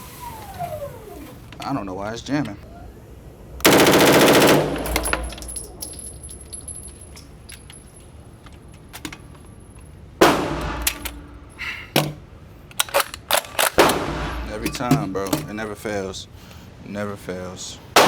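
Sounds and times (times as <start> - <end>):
loud gunshots with echo: 3.6 - 5.4, 10.2 - 11.5, 13.8 - 15.2
firearm clicks and rattles: 4.7 - 10.0, 10.6 - 11.3, 12.0 - 15.6.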